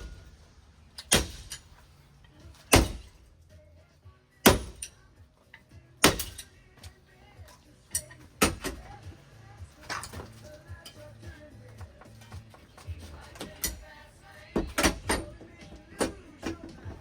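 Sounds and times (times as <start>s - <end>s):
small knocks and rattling: 9.8s - 17.0s.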